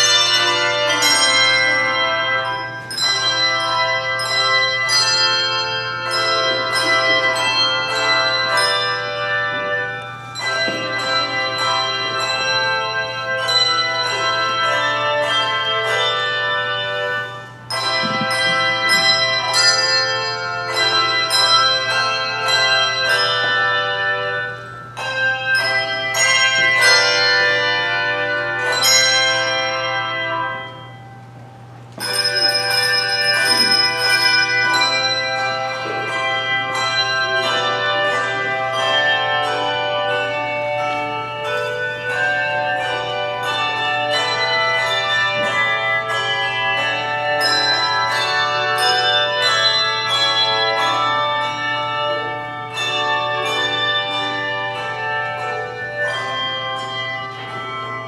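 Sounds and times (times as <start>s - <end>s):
handbells ringing: 0.0s - 58.0s.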